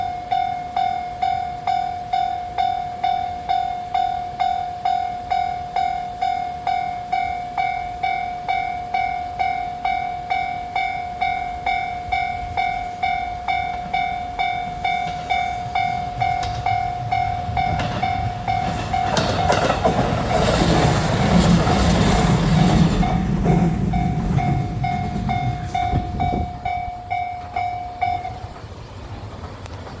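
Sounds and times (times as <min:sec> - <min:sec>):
level crossing bell ringing: 0:00.0 - 0:19.8, 0:23.0 - 0:28.6
diesel railcar engine rumble: 0:00.0 - 0:30.0
train wheel clatter: 0:09.0 - 0:30.0.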